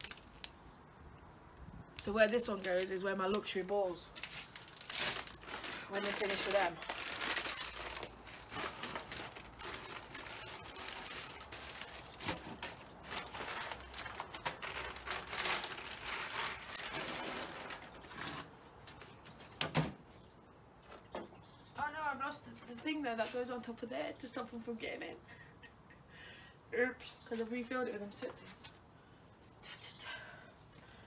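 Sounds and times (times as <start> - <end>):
rustling and crinkling handling: 0.0 - 0.6, 2.0 - 19.7.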